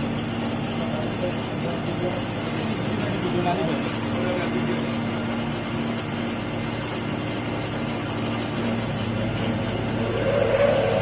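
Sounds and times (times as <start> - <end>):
motor hum: 0.0 - 11.0
even mechanical noise: 8.6 - 11.0.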